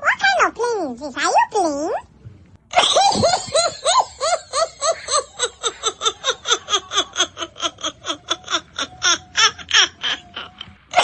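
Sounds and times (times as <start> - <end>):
high-pitched laughter: 2.7 - 11.0.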